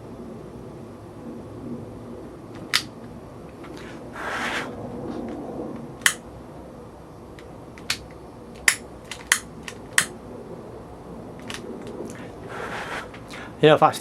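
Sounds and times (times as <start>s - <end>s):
faint steady hiss: 0.0s - 14.0s
sharp short clicks: 7.8s - 10.1s.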